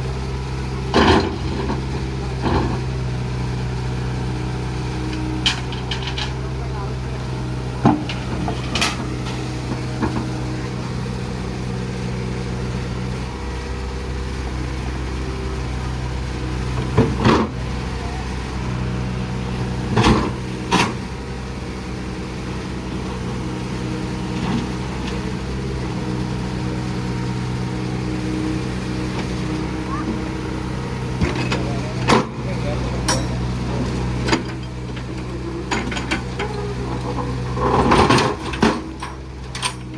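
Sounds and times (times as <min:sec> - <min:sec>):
heavy diesel engine running: 0:00.0 - 0:39.9
sharp metallic clanks: 0:33.0 - 0:33.6.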